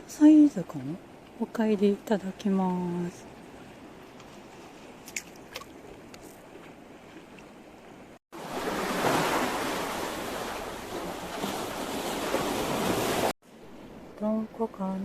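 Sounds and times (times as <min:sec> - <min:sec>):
sea waves washing: 0:08.3 - 0:13.9.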